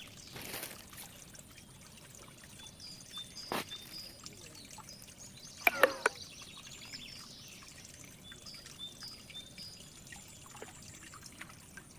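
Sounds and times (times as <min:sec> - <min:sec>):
small birds chirping: 0:00.0 - 0:11.3
water trickling: 0:00.0 - 0:11.9.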